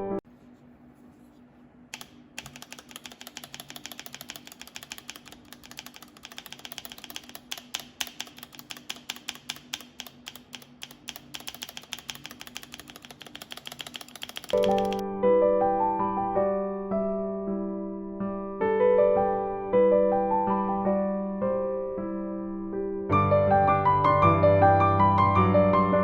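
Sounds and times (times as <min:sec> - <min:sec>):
typing on mechanical keyboard: 0:02.0 - 0:15.0.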